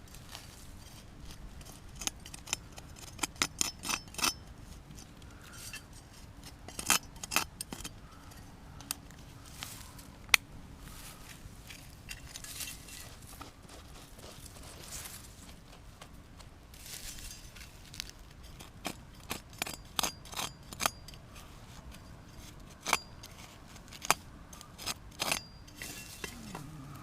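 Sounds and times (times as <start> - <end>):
soft scraping in soil: 0.0 - 2.0, 9.1 - 10.2, 10.8 - 16.1, 16.7 - 18.8, 21.3 - 24.9.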